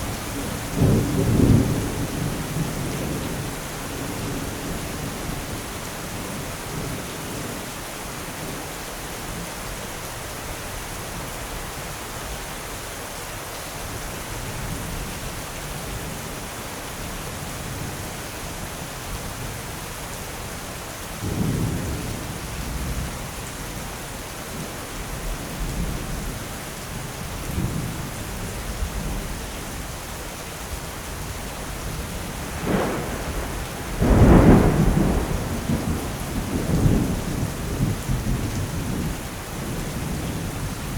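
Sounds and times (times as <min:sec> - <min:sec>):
steady rain: 0:00.0 - 0:40.9
thunder rumbling: 0:31.8 - 0:40.9
sharp thunderclap: 0:32.4 - 0:39.7.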